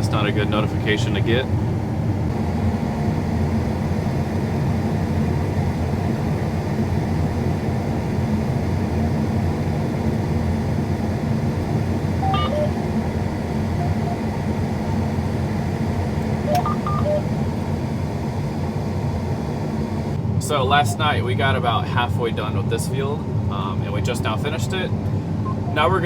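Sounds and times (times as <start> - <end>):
combine harvester drone: 0.0 - 26.0
electronic beeps chime: 12.2 - 12.8, 13.8 - 14.2, 16.5 - 17.3, 25.5 - 26.0.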